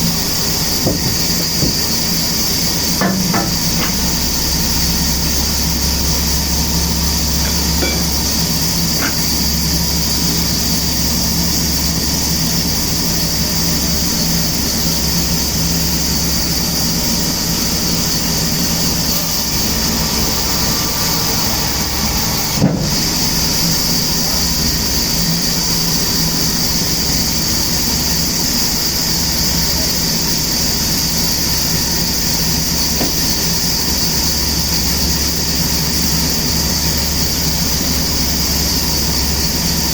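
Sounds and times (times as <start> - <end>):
sawmill machinery hiss: 0.0 - 39.9
sharp knock: 0.9 - 2.0, 3.0 - 4.2.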